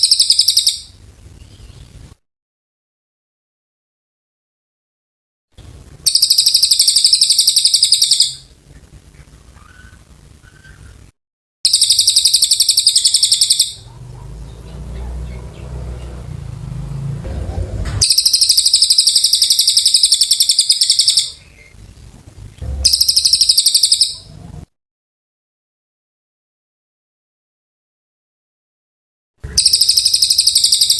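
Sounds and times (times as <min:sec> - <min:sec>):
bird rattling trill: 0:06.1 - 0:08.4, 0:11.7 - 0:16.5, 0:18.0 - 0:21.4, 0:22.7 - 0:24.3, 0:29.5 - 0:30.9
low rumble: 0:13.8 - 0:18.4, 0:21.7 - 0:23.5.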